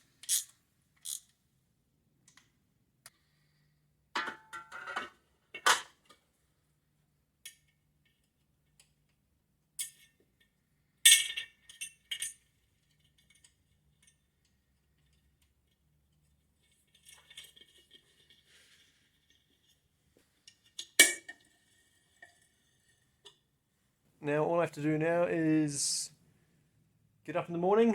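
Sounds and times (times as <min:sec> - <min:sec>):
metal parts clinking: 0:00.2 - 0:01.3, 0:11.1 - 0:14.2.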